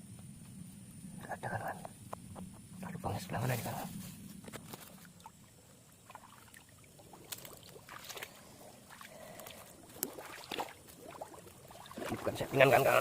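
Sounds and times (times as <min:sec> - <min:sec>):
grass rustling: 0:01.8 - 0:13.0
water sloshing: 0:04.6 - 0:13.0.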